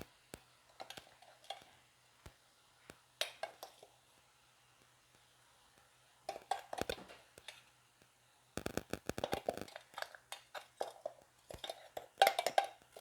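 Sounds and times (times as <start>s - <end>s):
spoon scraping in a wok: 9.4s - 13.0s.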